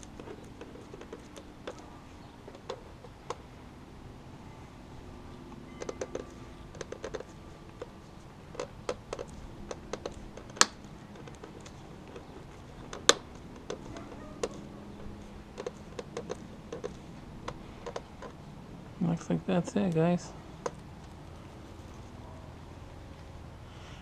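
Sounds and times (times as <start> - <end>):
plastic clicks and taps: 5.8 - 7.9, 8.5 - 14.6, 15.6 - 18.4
sharp plastic snaps: 8.5 - 18.4.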